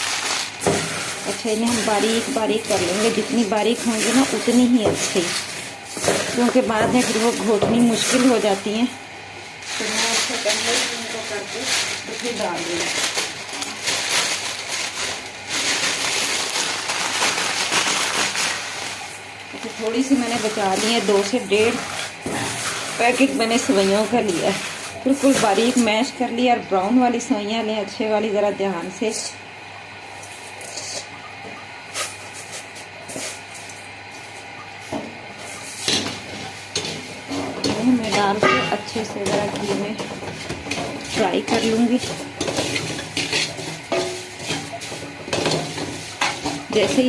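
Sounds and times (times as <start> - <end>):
dry noodles crunching: 0.0 - 0.6, 9.7 - 19.7
dry noodles rustling and crunching: 0.0 - 8.7, 9.6 - 25.8.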